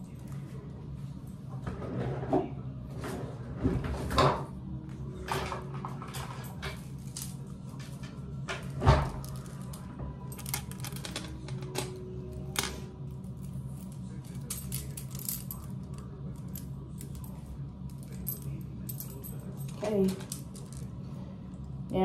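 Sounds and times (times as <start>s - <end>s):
steady low hum: 0.0s - 22.0s
small items clicking and clinking: 8.6s - 12.8s, 17.9s - 20.9s.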